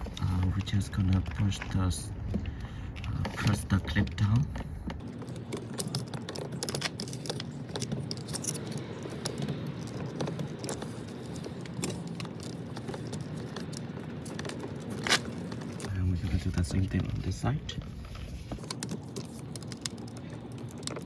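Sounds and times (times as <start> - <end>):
plastic clicks and rattles: 0.0 - 17.2, 18.1 - 21.0.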